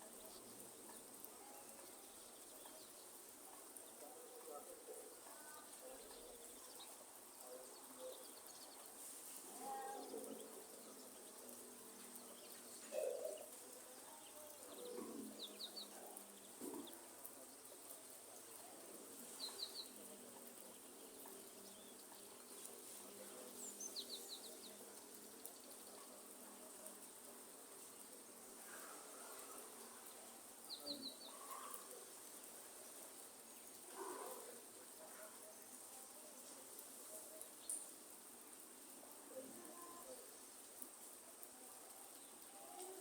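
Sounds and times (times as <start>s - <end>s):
faint high insect hiss: 5.0s - 43.0s
birds calling: 12.3s - 13.7s.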